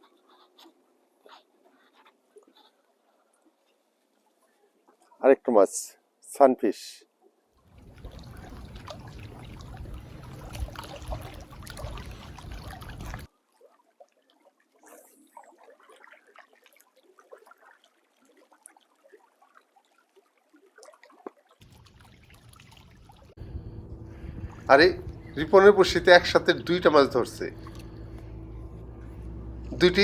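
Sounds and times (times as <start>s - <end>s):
small splashes and ticks: 0.0s - 5.2s, 7.6s - 23.5s, 24.1s - 30.0s
water trickling and lapping: 0.0s - 5.2s, 7.1s - 30.0s
low rumble: 7.8s - 13.3s, 21.6s - 30.0s.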